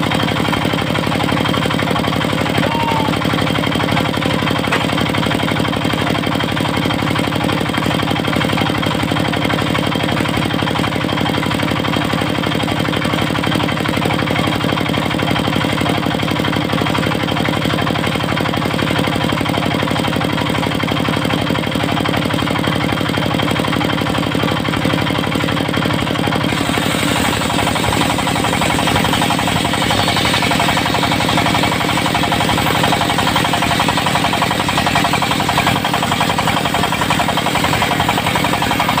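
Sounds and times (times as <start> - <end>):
diesel engine running: 0.0 - 39.0
higher hiss: 26.5 - 36.2.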